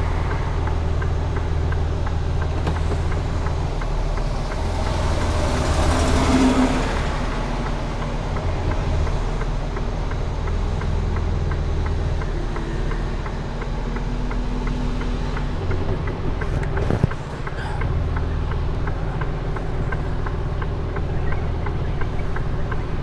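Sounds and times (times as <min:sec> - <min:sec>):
diesel lorry engine idling: 0:00.0 - 0:23.0
quick regular ticking: 0:00.2 - 0:05.4.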